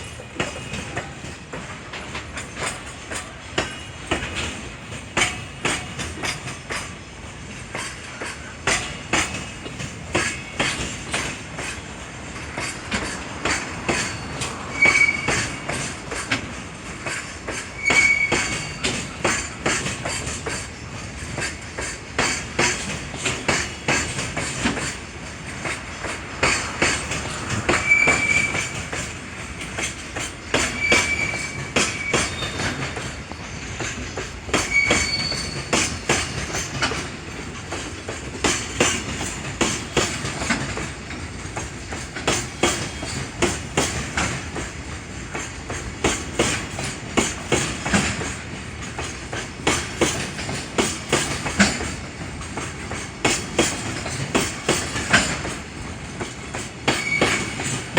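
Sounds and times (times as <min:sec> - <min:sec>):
train wheels clicking over rail joints: 0:00.0 - 0:57.9
high wheel squeals: 0:13.5 - 0:16.2, 0:17.6 - 0:19.6, 0:27.2 - 0:29.1, 0:30.5 - 0:33.8, 0:34.5 - 0:36.6, 0:56.9 - 0:57.9.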